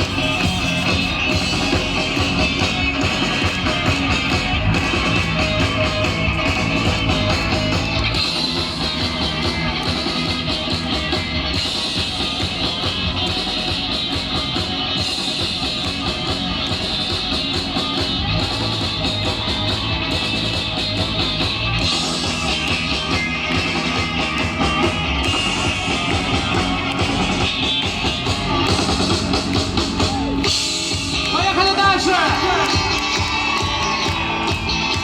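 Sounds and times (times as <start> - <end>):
rock band instrumental: 0.0 - 35.0.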